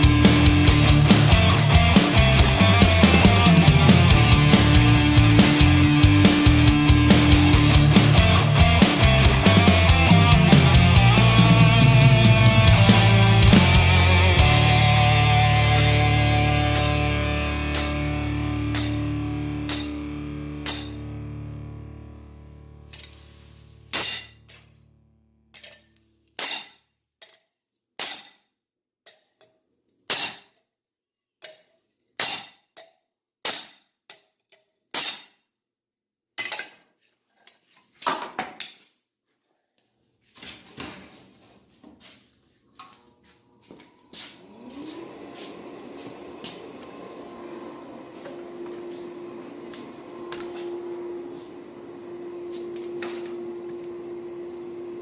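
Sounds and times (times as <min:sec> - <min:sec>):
machine humming: 0:00.0 - 0:20.5, 0:44.4 - 0:55.0
hammer striking steel: 0:15.8 - 0:16.1, 0:17.8 - 0:18.1, 0:18.7 - 0:19.1, 0:19.7 - 0:20.0, 0:20.6 - 0:21.0, 0:23.9 - 0:24.6, 0:25.6 - 0:27.4, 0:28.0 - 0:28.5, 0:33.5 - 0:33.9, 0:35.0 - 0:35.4.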